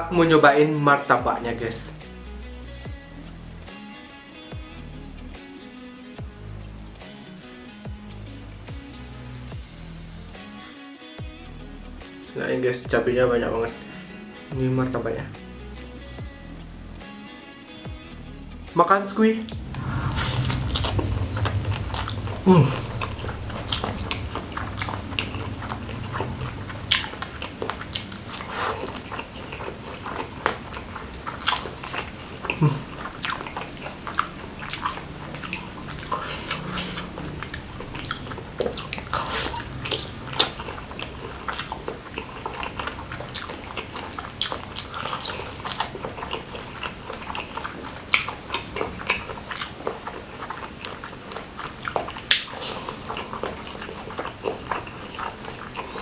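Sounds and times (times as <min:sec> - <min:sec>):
eating and chewing clicks: 0:19.5 - 0:56.0.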